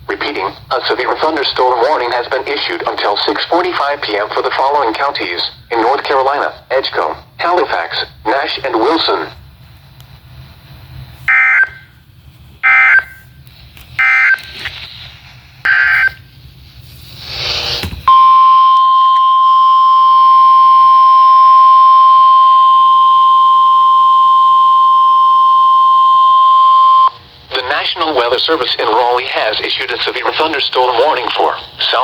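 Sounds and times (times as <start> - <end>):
steady warning alarm tone: 11.3 - 12.0, 12.6 - 13.4, 14.0 - 14.6, 15.6 - 16.3, 17.4 - 27.2.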